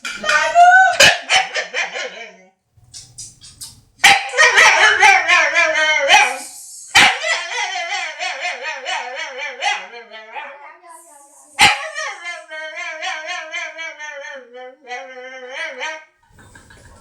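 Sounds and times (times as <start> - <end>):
dog wavering vocal calls: 3.5 - 14.0.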